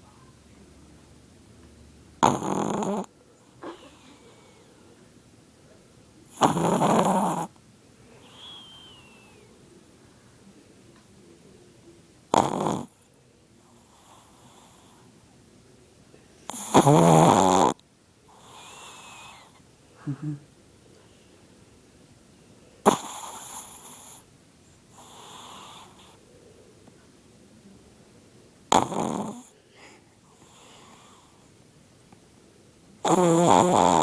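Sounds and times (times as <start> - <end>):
dog snoring: 2.2 - 3.1, 6.3 - 7.5, 8.2 - 9.2, 12.3 - 13.0, 13.8 - 15.0, 16.5 - 19.6, 22.8 - 24.3, 24.9 - 26.2, 28.7 - 29.5, 30.4 - 31.4, 33.0 - 34.0
dog breathing softly: 8.1 - 9.5, 24.9 - 26.2, 29.8 - 31.5.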